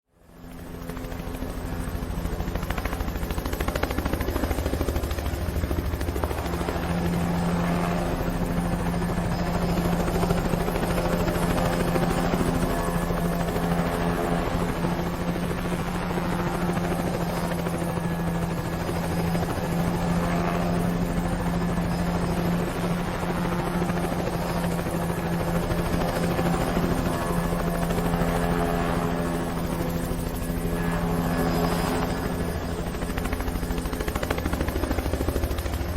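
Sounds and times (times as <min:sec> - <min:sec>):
helicopter rotor chop: 0:00.3 - 0:35.9.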